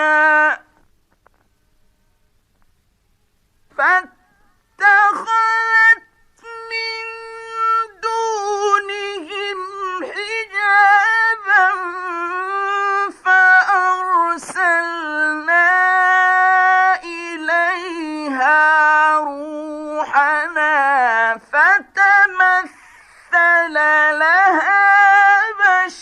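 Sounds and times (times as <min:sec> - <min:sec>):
man chanting melodic recitation: 0:00.0 - 0:00.8, 0:03.7 - 0:22.7.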